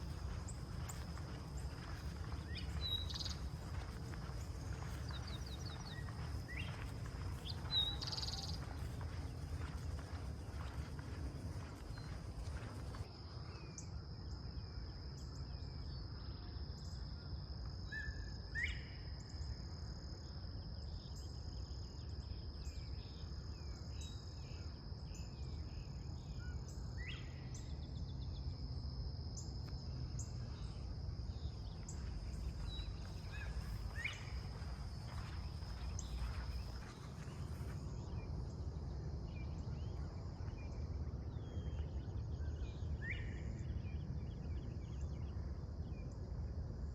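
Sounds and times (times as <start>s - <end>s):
high insect drone: 0.0s - 13.0s, 22.0s - 46.1s
small songbirds chirping: 0.0s - 46.9s.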